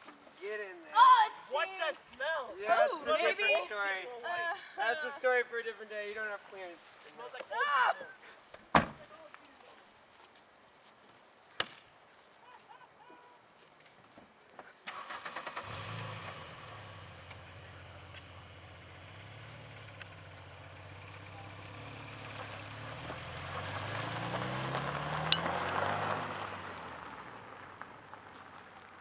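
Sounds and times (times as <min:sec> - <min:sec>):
vehicle engine cranking and running: 0:14.9 - 0:26.3.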